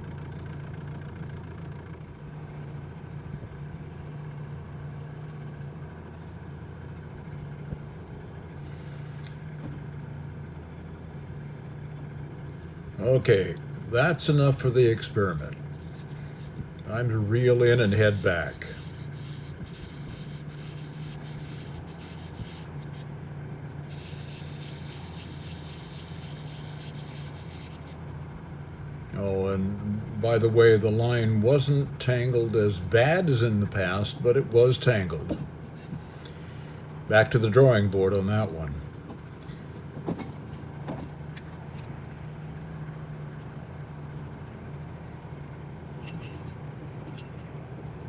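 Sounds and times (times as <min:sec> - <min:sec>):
boat motor humming: 0:11.2 - 0:31.5, 0:32.8 - 0:37.2
fishing reel whirring: 0:14.6 - 0:16.8, 0:17.7 - 0:23.1, 0:23.7 - 0:28.2.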